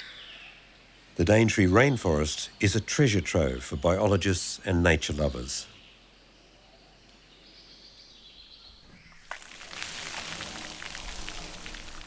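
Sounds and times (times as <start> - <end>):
faint rainforest ambience: 0.0 - 12.0
heavy rain: 9.3 - 12.0.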